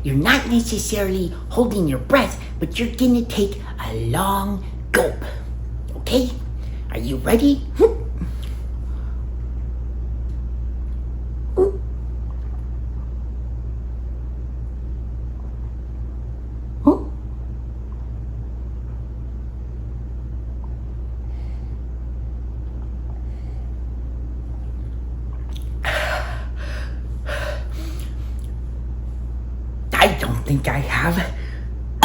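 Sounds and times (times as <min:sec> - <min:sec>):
steady low hum: 0:00.0 - 0:32.0
man hiccuping: 0:07.8 - 0:08.2, 0:16.8 - 0:17.2
heavy breathy breaths: 0:25.8 - 0:28.4.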